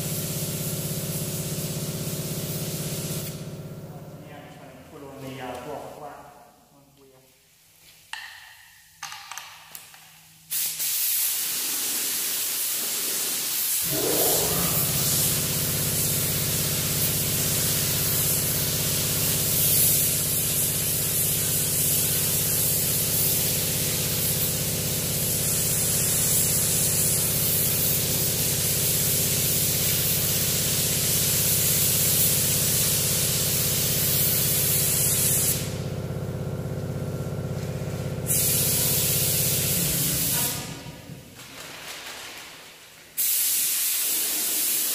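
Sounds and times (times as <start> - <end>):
paint spray gun hissing: 0.0 - 3.5, 10.5 - 35.8, 37.7 - 41.2, 43.1 - 44.9
steady machine hum: 13.8 - 16.4.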